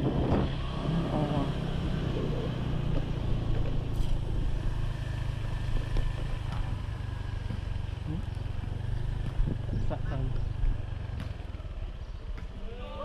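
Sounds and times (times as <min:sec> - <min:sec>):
engine humming: 0:00.0 - 0:13.0.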